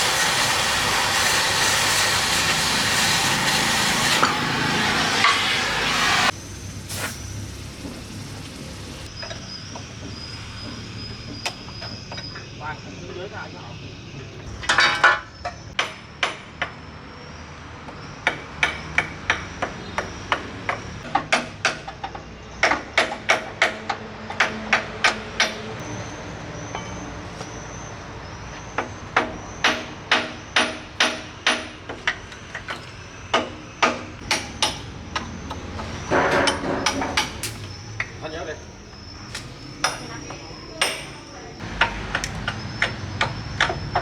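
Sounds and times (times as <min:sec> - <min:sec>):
hammer striking metal: 0:29.2 - 0:32.0, 0:33.4 - 0:35.3, 0:39.8 - 0:43.8.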